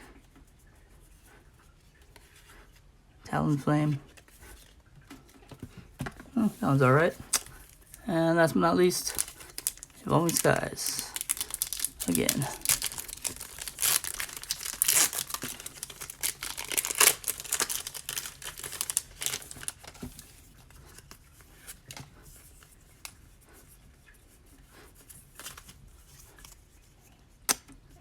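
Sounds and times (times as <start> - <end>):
wrapper tearing and crinkling: 6.4 - 20.2.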